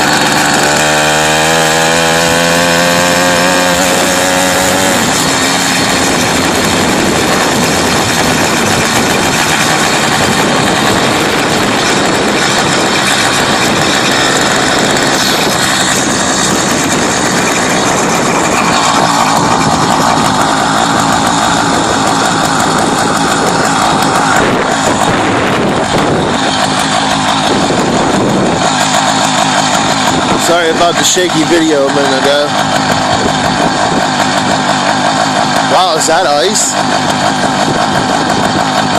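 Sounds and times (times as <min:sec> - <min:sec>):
motorized bicycle engine running: 0:00.0 - 0:38.9.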